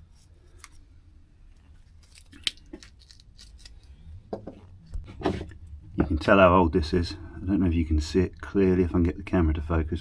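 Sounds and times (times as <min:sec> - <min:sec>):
hands and tool clicking and scraping: 0:01.5 - 0:06.2.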